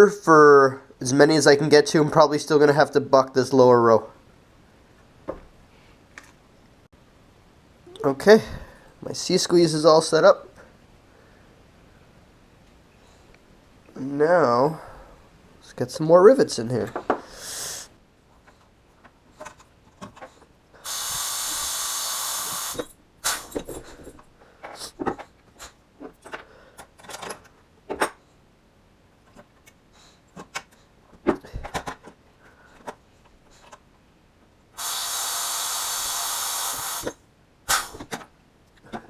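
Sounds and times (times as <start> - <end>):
compressed air hissing: 17.3 - 18.0, 20.8 - 23.6, 34.8 - 38.1
clicks and knocks of metal parts: 26.0 - 28.2.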